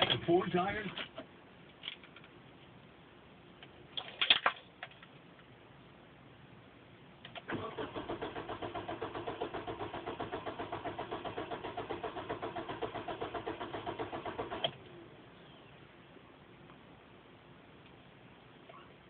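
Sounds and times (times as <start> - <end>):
car engine cranking: 7.3 - 14.9.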